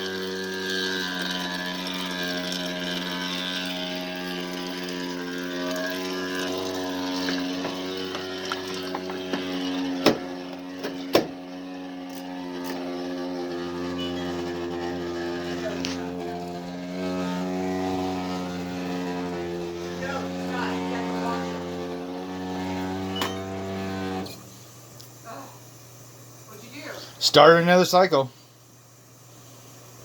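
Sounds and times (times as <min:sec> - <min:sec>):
washing machine humming: 0:00.0 - 0:28.2
sharp knocks: 0:11.1 - 0:11.3.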